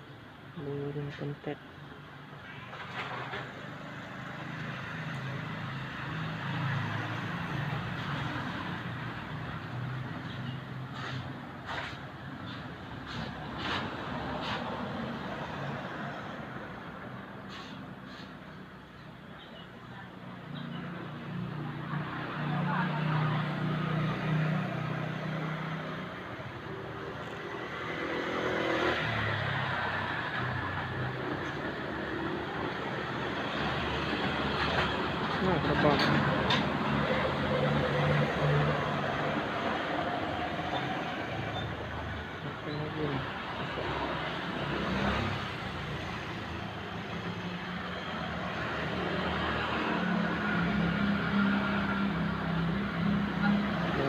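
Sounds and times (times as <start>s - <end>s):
road noise: 0.0s - 54.0s
vehicle engine passing by: 3.0s - 16.8s, 20.4s - 54.0s
traffic hiss: 17.3s - 18.7s.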